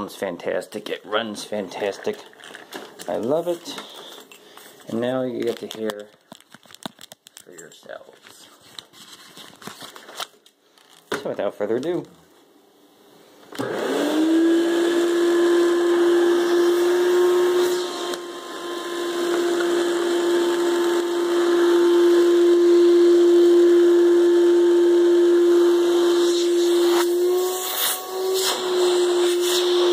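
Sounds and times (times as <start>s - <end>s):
vacuum cleaner motor humming: 13.5s - 29.9s.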